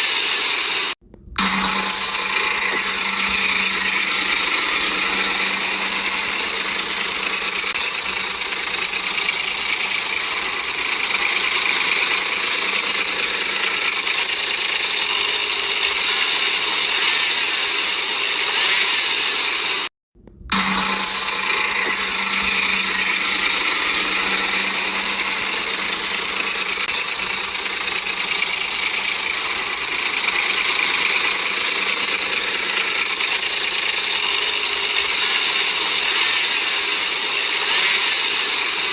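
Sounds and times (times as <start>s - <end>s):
engine running: 0.0s - 38.9s
timing chain rattling and tapping: 1.4s - 19.6s, 20.6s - 38.9s.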